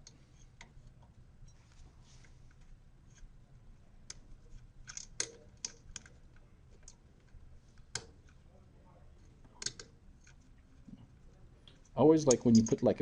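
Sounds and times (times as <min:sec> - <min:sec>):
tubing fitting clicks and taps: 0:04.9 - 0:07.0, 0:09.4 - 0:10.4.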